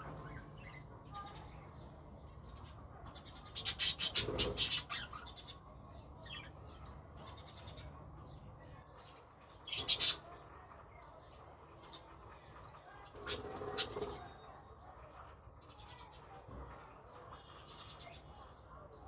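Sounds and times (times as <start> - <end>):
budgerigars chirping softly: 2.4 - 5.6, 9.7 - 10.3
harsh pulsing bird calls: 3.5 - 5.4.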